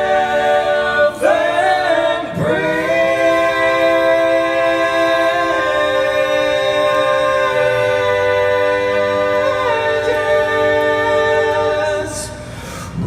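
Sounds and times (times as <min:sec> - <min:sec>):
men singing harmony chord: 0:00.0 - 0:13.0.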